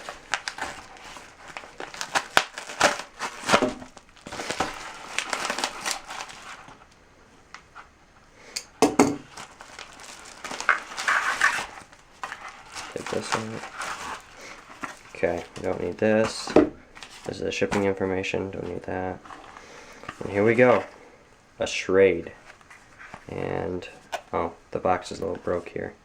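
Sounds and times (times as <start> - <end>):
packaging crinkling and rustling: 0.0 - 7.9, 9.2 - 21.0.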